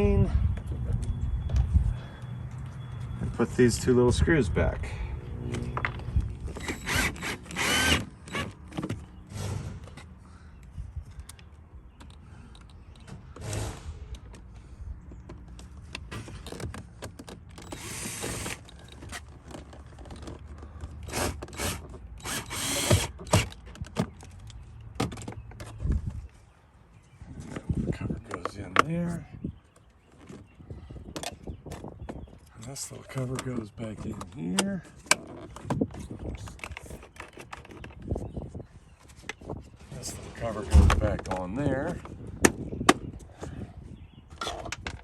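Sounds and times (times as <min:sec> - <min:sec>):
power driver driving screws: 0:06.6 - 0:08.6, 0:17.6 - 0:18.8, 0:21.0 - 0:23.6.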